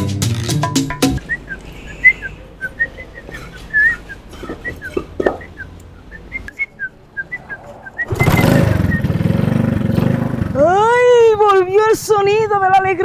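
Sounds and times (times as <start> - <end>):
short whistled chirps: 6.4 - 9.2.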